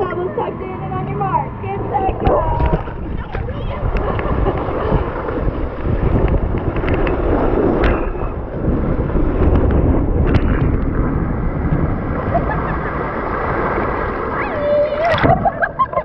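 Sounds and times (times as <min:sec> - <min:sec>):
rushing water: 0:00.0 - 0:16.0
wind buffeting microphone: 0:00.0 - 0:16.0.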